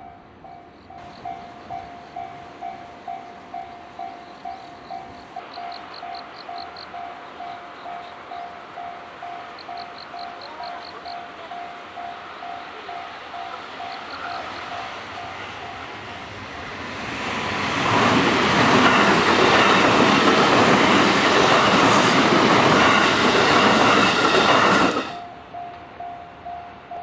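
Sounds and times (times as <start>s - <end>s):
electric train rushing past: 1.0s - 27.0s
wheels rattling over rails: 13.6s - 25.4s.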